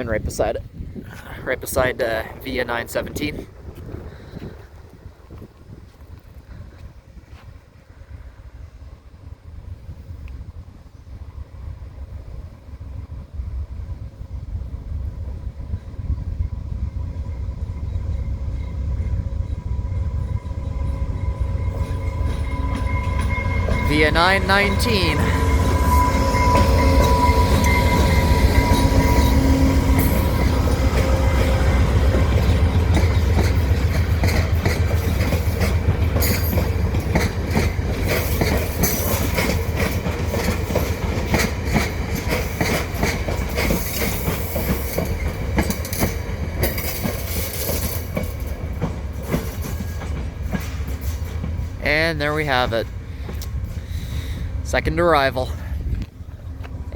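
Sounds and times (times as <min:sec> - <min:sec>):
train low rumble: 0:00.0 - 0:56.9
thin steady squeal: 0:16.4 - 0:23.9, 0:24.9 - 0:31.9
wheels clicking over rails: 0:26.6 - 0:51.8.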